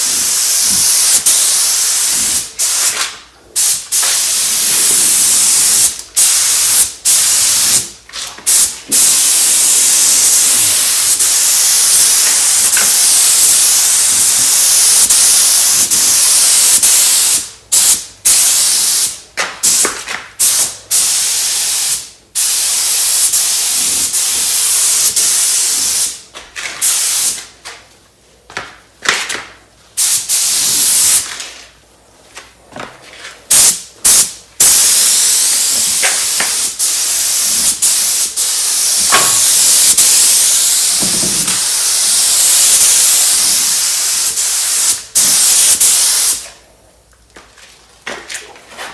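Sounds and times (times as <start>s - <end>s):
spray gun hissing: 0.0s - 2.9s, 8.5s - 19.1s, 33.6s - 46.4s.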